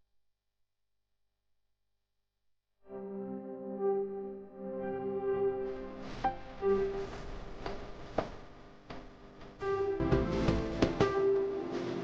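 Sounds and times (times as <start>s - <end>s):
held piano-like notes: 9.6s - 12.0s.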